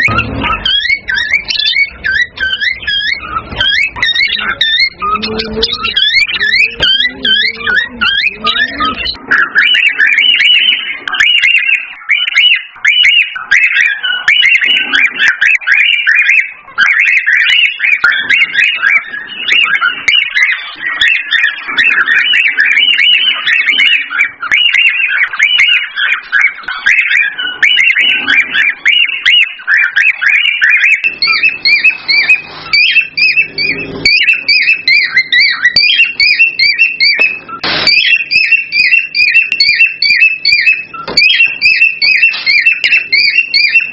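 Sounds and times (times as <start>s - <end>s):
cockatiels chirping and warbling: 0.0s - 43.9s
two-pitch repeated chirp: 0.0s - 43.9s.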